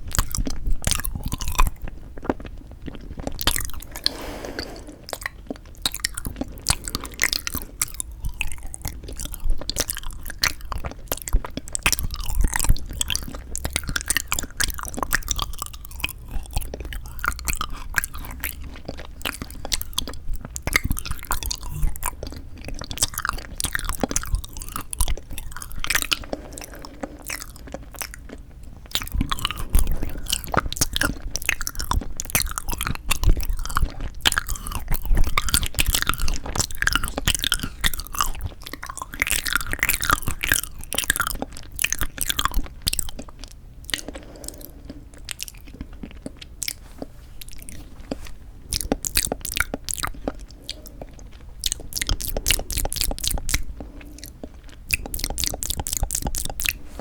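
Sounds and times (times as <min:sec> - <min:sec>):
chewing and biting jelly: 0:00.0 - 0:57.0.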